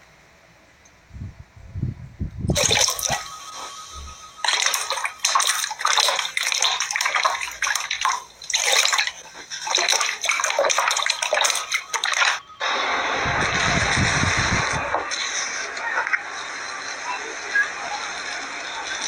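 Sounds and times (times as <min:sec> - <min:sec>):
liquid sloshing and splashing: 0:02.5 - 0:03.8, 0:04.4 - 0:12.4
steady rushing noise: 0:12.4 - 0:17.0.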